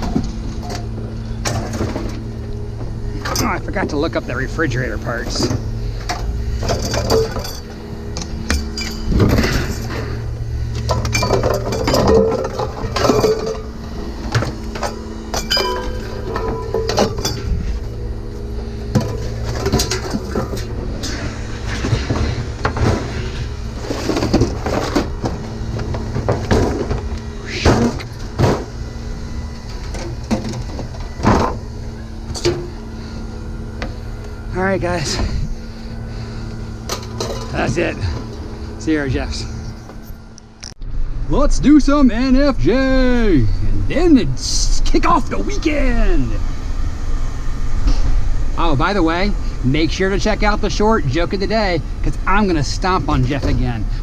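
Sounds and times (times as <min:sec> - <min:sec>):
steady low hum: 0:00.0 - 0:54.0
vehicle engine rumbling: 0:00.0 - 0:54.0
scrap metal clinking and knocking: 0:05.4 - 0:10.2, 0:10.8 - 0:13.7, 0:14.8 - 0:17.6
sharp metal clanks: 0:14.8 - 0:17.6.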